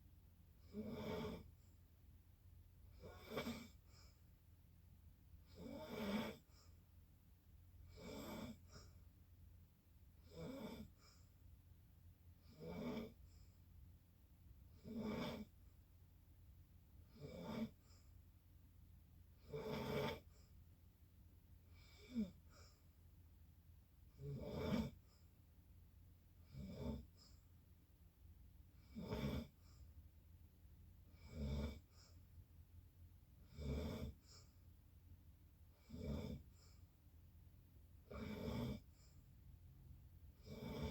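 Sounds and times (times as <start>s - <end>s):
rhythmic snoring: 0.6s - 1.7s, 2.9s - 4.2s, 5.4s - 6.8s, 7.8s - 9.0s, 10.2s - 11.3s, 12.4s - 13.5s, 14.7s - 15.6s, 17.1s - 18.1s, 19.4s - 20.5s, 21.7s - 22.8s, 24.1s - 25.2s, 26.4s - 27.4s, 28.8s - 29.9s, 31.1s - 32.2s, 33.4s - 34.6s, 35.8s - 36.9s, 38.0s - 39.2s, 40.4s - 40.9s.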